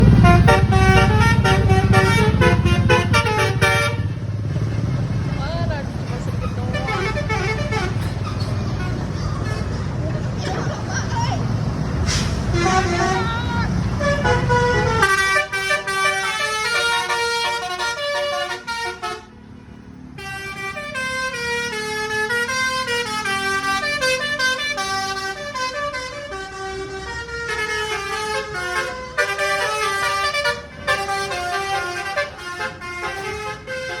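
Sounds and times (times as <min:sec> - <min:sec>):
truck multi-tone horn tune: 0:00.0 - 0:05.0, 0:06.4 - 0:10.0, 0:12.0 - 0:34.0.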